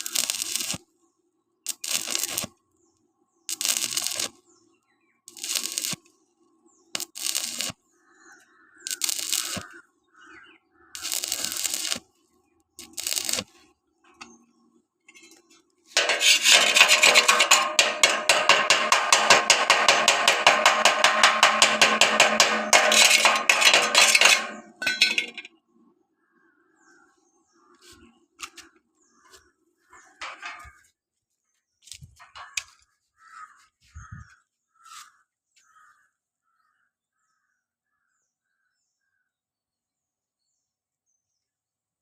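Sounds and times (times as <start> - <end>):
crackling welding arc: 0.0 - 0.8, 1.7 - 2.5, 3.5 - 4.4, 5.3 - 6.1, 7.0 - 7.8, 8.8 - 9.8, 11.0 - 12.1, 12.8 - 13.6, 16.0 - 24.8.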